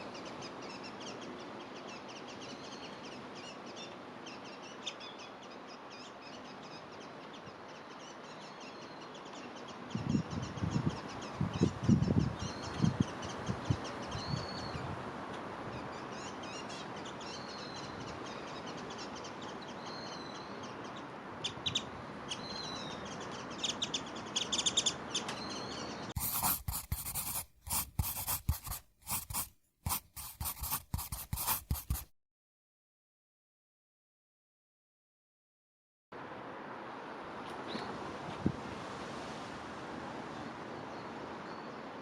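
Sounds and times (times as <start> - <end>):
background noise: 0.0 - 32.1
sharp clicks and scratches: 26.2 - 32.1.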